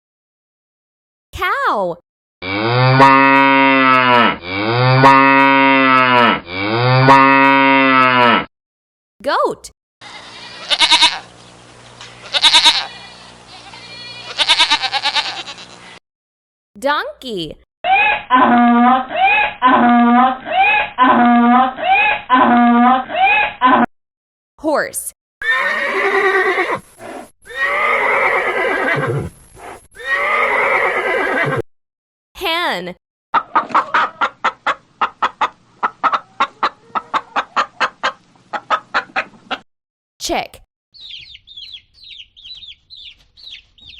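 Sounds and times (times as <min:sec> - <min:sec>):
cow mooing: 0:02.4 - 0:08.5
horse whinnying: 0:25.4 - 0:29.3, 0:30.0 - 0:31.6.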